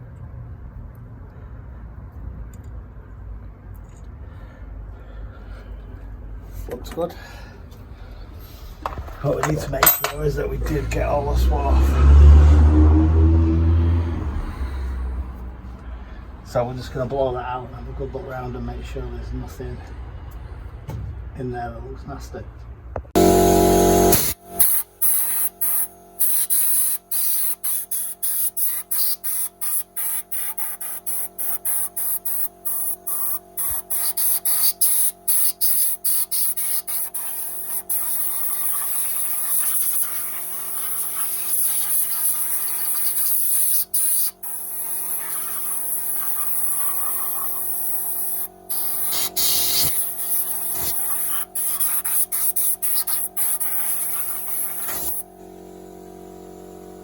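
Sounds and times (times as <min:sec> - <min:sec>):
compressed air hissing from nozzle: 0:23.2 - 0:55.3.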